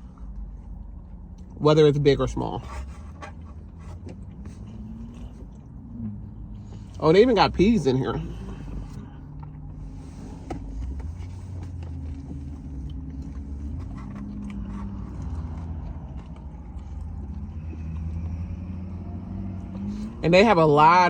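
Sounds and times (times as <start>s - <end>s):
car engine idling: 0.0s - 21.0s
faint clicks of eating: 10.6s - 18.3s.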